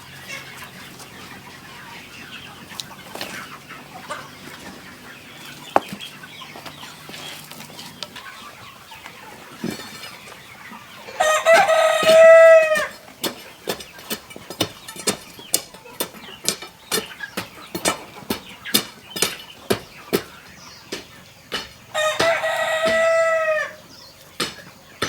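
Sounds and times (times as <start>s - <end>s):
rooster crowing: 11.1s - 13.0s, 21.9s - 23.8s.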